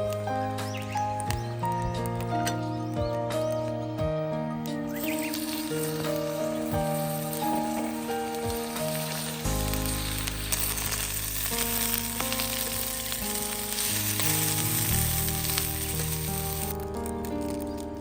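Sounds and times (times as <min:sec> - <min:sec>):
background music: 0:00.0 - 0:18.0
food sizzling in a pan: 0:04.9 - 0:18.0.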